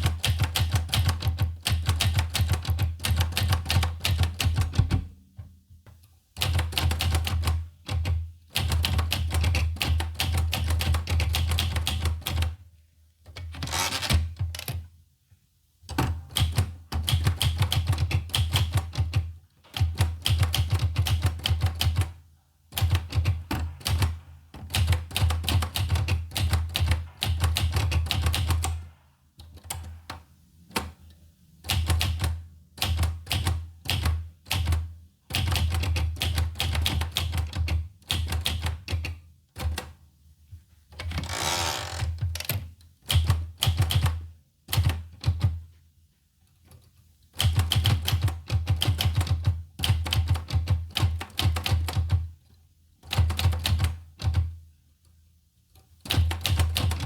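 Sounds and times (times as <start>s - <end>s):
typewriter keystrokes: 0.0s - 5.1s, 6.4s - 12.6s, 15.9s - 22.1s, 22.8s - 30.9s, 31.7s - 40.0s, 41.0s - 45.6s, 47.4s - 52.3s, 53.0s - 54.5s, 56.0s - 57.0s
typewriter scraping: 13.6s - 14.2s, 41.1s - 42.2s.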